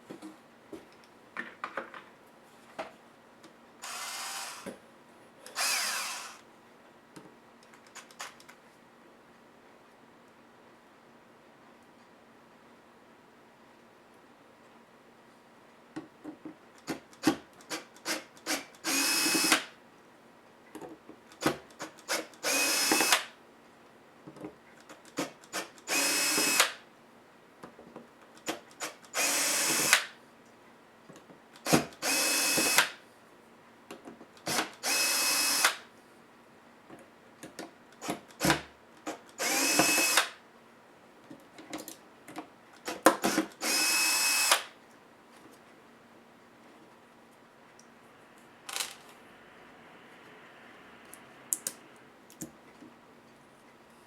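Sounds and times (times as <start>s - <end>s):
electric screwdriver motor whine: 3.8s - 4.7s, 5.5s - 6.4s, 18.9s - 19.6s, 22.4s - 23.2s, 25.9s - 26.8s, 29.2s - 30.0s, 32.0s - 32.9s, 34.8s - 35.8s, 39.4s - 40.3s, 43.6s - 44.7s.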